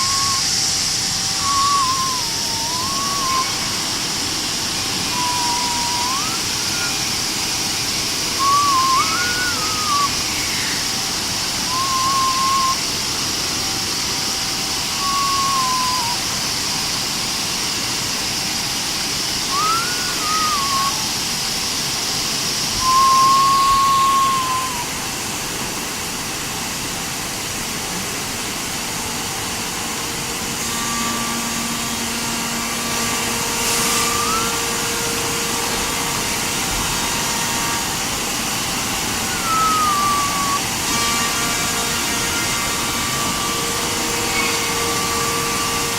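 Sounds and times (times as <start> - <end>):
short squeals: 0.0 - 7.7, 8.3 - 12.9, 14.9 - 16.4, 19.5 - 21.2, 30.6 - 36.4, 39.1 - 42.5
high hiss: 0.0 - 45.9.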